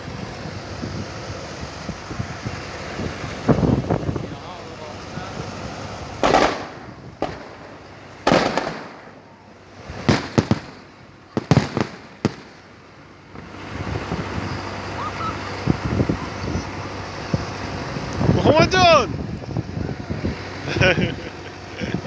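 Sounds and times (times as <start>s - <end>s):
fireworks booming: 5.3s - 14.8s.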